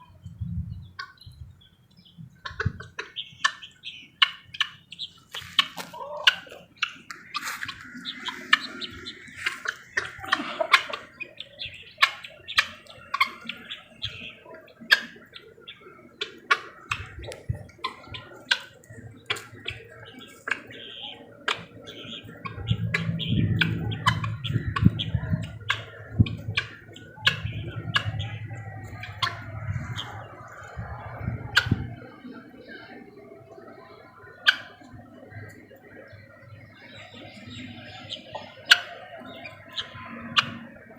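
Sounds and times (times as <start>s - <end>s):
birds calling: 0.0s - 40.9s
bird chirps and clicks: 1.0s - 30.7s
low pulsing throaty call: 2.3s - 40.9s.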